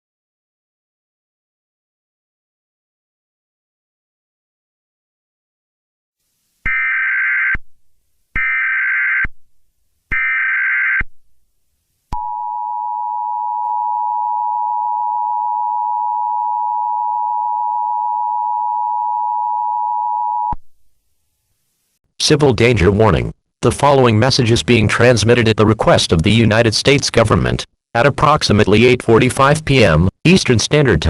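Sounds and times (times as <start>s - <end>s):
steady two-tone attention signal: 12.2s - 20.6s.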